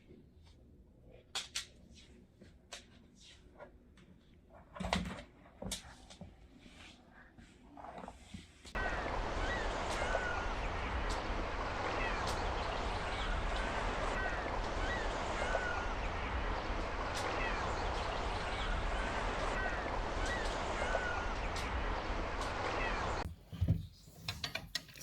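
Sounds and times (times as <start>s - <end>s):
background rush with low rumble: 8.8s - 23.3s.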